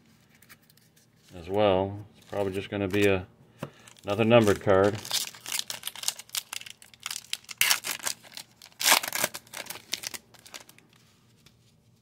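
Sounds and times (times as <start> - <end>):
wrapper crinkling and tearing: 3.8 - 11.0.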